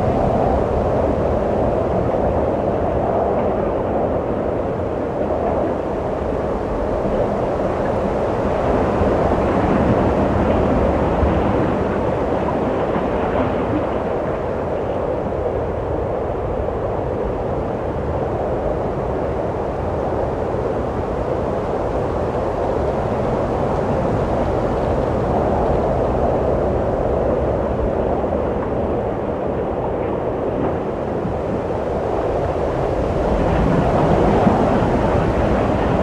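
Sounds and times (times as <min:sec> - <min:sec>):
wind with low rumble: 0:00.0 - 0:36.0.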